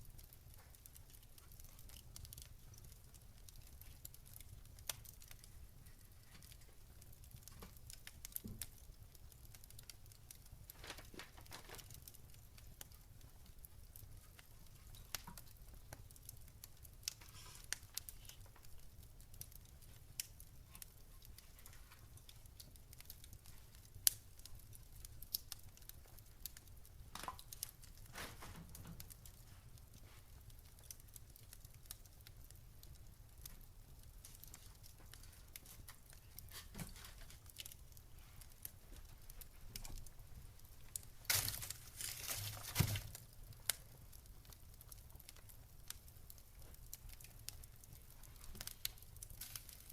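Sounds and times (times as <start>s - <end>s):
faint ticks and crackles: 0.0s - 49.9s
papery rustling: 41.3s - 43.1s.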